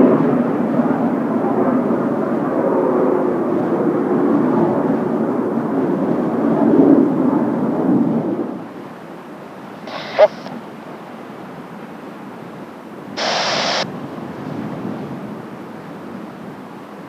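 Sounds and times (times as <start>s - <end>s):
jets flying over: 9.9s - 10.5s, 13.2s - 13.8s.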